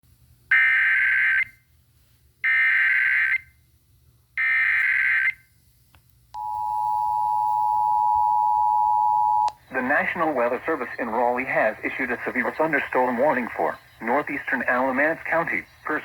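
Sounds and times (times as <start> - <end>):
two-tone alert signal: 6.4 - 9.5.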